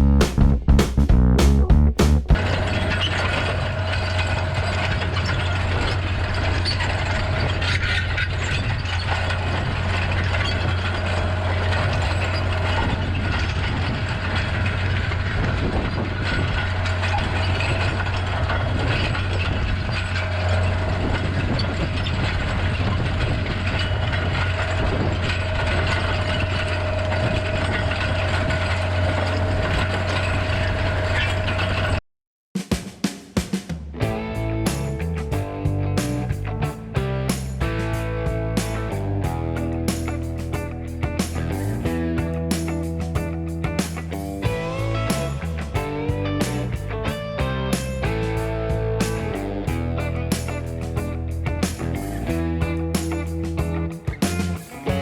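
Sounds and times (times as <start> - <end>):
tractor engine running: 0.0 - 31.9.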